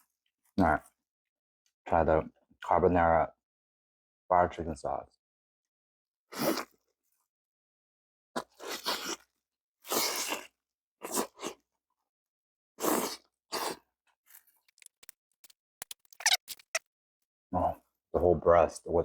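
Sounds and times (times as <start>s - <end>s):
small sharp mouth clicks: 14.7s - 15.1s, 15.8s - 16.8s
crunchy chewing: 14.7s - 16.8s.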